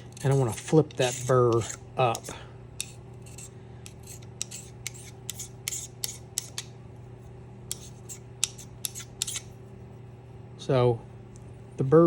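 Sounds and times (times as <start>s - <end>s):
sharpening stone scraping steel blade: 0.0s - 6.7s, 7.7s - 9.5s
steady low hum: 0.0s - 12.0s.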